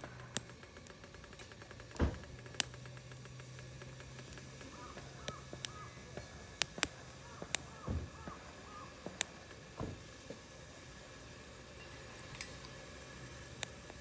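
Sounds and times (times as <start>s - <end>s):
campfire crackling: 0.0s - 14.0s
dull thumps: 7.4s - 8.5s.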